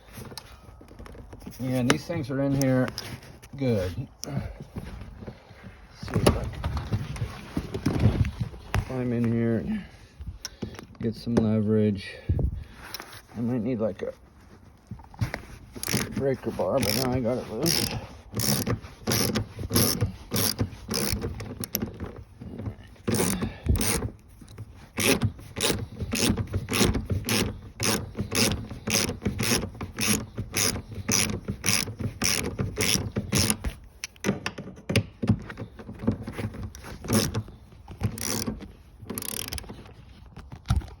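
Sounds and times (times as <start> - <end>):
socket ratchet clicking: 16.8 - 17.1, 17.7 - 21.8, 23.1 - 24.2, 24.9 - 34.3, 37.1 - 39.7.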